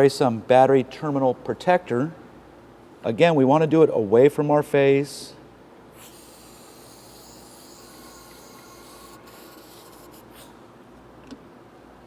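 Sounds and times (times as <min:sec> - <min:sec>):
aerosol can spraying hiss: 0:06.0 - 0:10.5.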